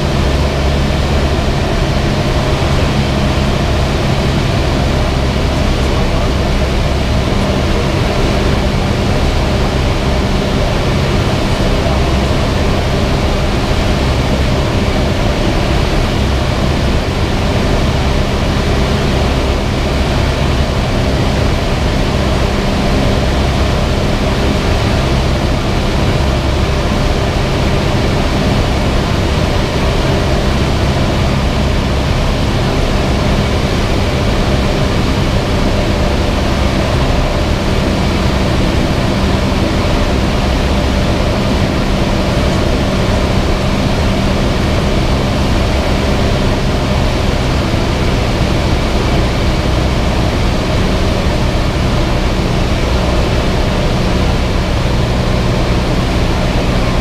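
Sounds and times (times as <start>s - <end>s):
propeller plane engine droning: 0.0s - 57.0s.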